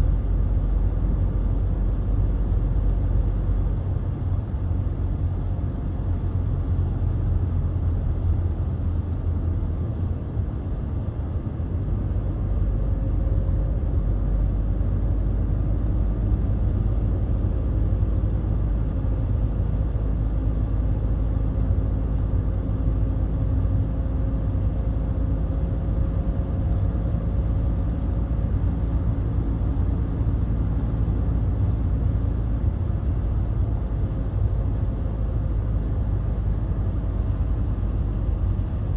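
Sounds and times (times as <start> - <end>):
diesel engine rumble: 0.0 - 38.9
road noise: 0.0 - 38.9.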